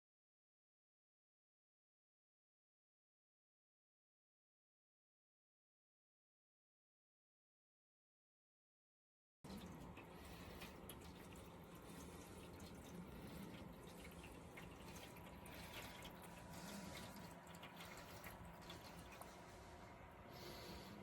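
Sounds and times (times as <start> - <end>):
pump humming: 9.5 - 21.0
water trickling and dripping: 9.5 - 21.0.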